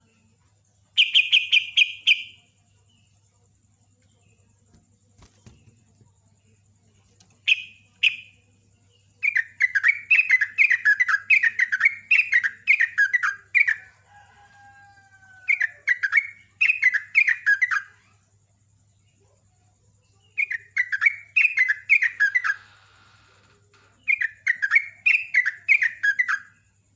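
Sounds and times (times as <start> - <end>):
bird singing rapid rolling song: 0.9 - 3.2, 7.2 - 18.0, 20.2 - 22.7, 24.0 - 26.9.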